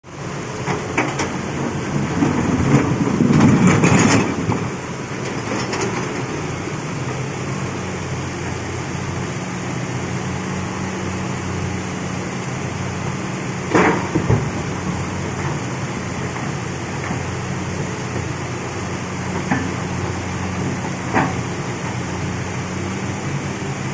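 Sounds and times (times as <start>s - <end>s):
excavator diesel engine running: 0.1s - 23.9s.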